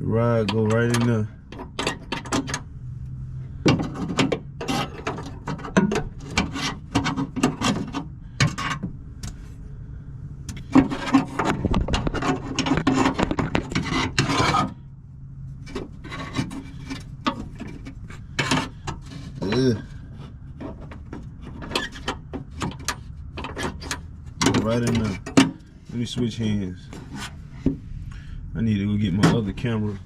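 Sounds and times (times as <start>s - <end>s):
clicks and knocks of metal parts: 0.4s - 2.7s, 3.6s - 9.4s, 10.4s - 14.7s, 15.7s - 19.8s, 20.6s - 26.3s
metal scraping against door: 0.5s - 8.9s, 10.6s - 28.0s.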